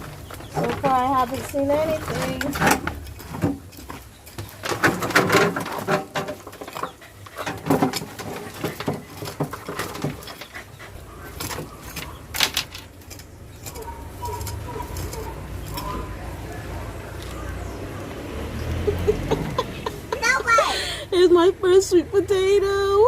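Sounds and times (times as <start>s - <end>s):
dog panting: 6.6s - 12.2s.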